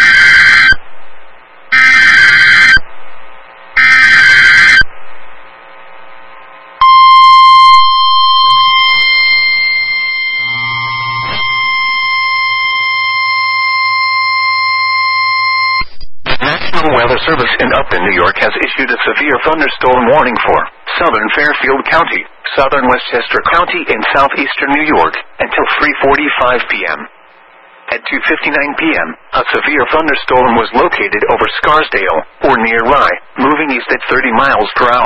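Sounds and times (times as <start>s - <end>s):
piercing single-pitch alarm tone: 0.0s - 0.8s, 1.7s - 2.8s, 3.8s - 4.9s, 6.8s - 16.1s
faint low hum: 0.5s - 35.0s
screechy digital data bursts: 3.8s - 4.9s, 6.8s - 15.9s.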